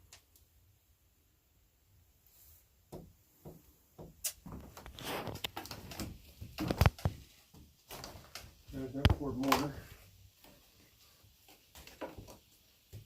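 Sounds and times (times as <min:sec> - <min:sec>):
rustling and clattering: 0:04.4 - 0:13.0.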